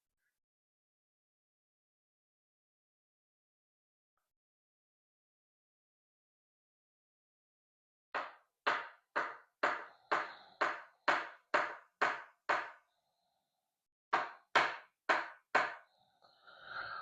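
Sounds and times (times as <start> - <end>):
short sharp knocks: 8.2 - 12.8.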